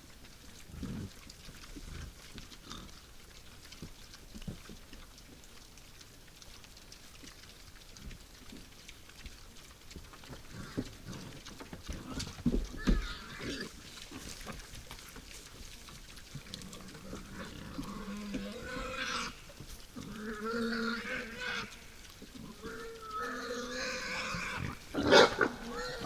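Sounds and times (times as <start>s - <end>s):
wild boars squealing and grunting: 10.4s - 15.4s, 16.2s - 26.0s.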